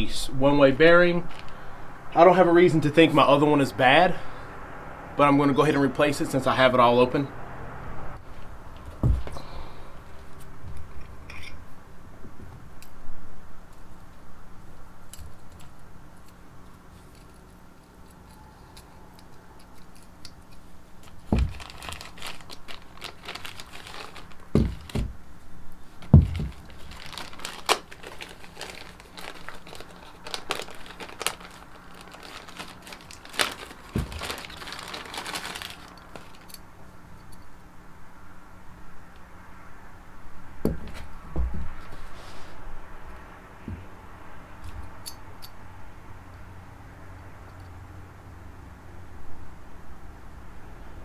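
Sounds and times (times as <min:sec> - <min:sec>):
crinkling and rustling: 0:00.0 - 0:03.4, 0:08.2 - 0:37.5, 0:40.6 - 0:45.2
dull knocks: 0:08.8 - 0:09.7, 0:21.3 - 0:22.1, 0:23.0 - 0:25.3, 0:26.0 - 0:27.6, 0:40.6 - 0:42.0.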